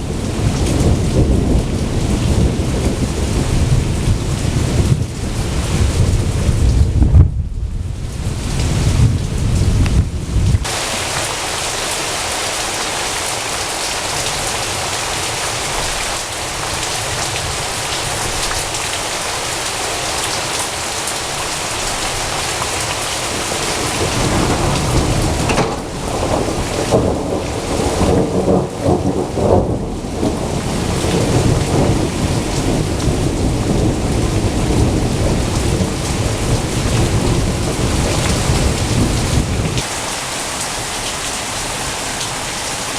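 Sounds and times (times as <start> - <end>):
thunder rumbling: 0.0 - 12.0, 21.4 - 39.9
rain falling: 0.0 - 42.9.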